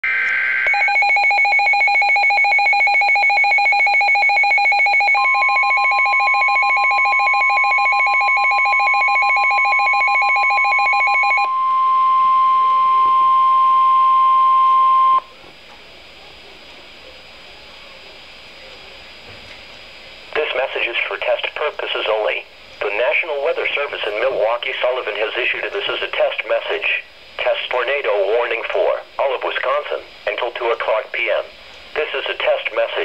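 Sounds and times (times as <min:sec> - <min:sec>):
steady warning alarm tone: 0:00.0 - 0:15.3
rapid pulsing alarm beep: 0:00.1 - 0:15.3
faint radio hiss: 0:15.2 - 0:33.0.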